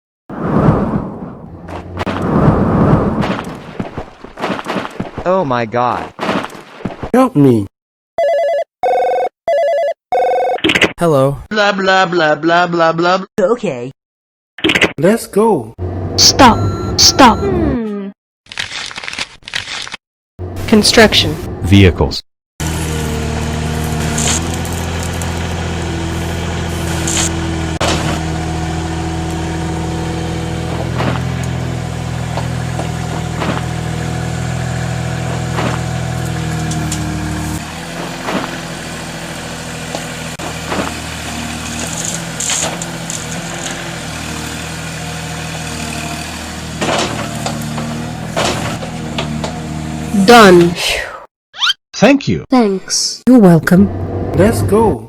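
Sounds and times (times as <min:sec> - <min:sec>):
quiet rumble: 0:00.3 - 0:05.2
truck engine idling: 0:00.7 - 0:04.5, 0:22.7 - 0:50.0.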